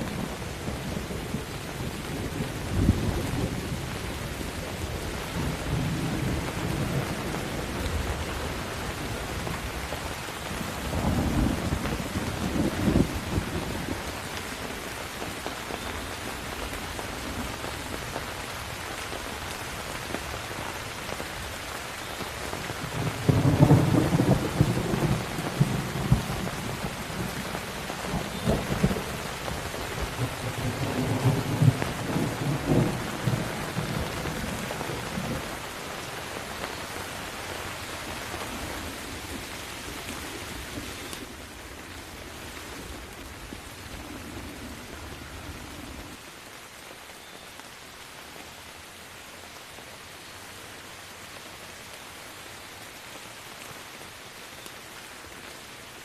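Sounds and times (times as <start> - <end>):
heavy rain: 0.0 - 56.0
rolling thunder: 22.8 - 35.6.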